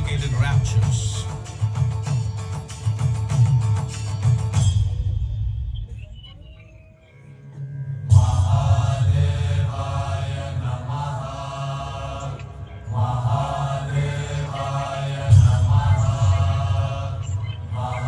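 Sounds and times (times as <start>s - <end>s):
mantra chanting: 0.0s - 1.8s, 8.1s - 18.0s
steady deep drone: 0.0s - 18.0s.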